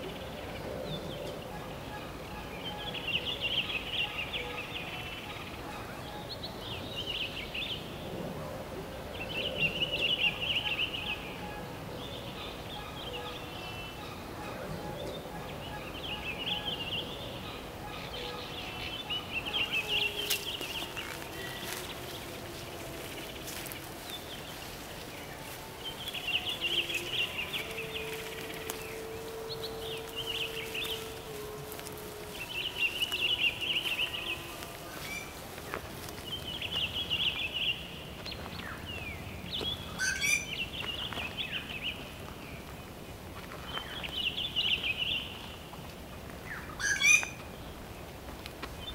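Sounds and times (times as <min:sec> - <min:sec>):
low steady drone: 0:06.2 - 0:37.6
birds chattering: 0:09.2 - 0:42.2.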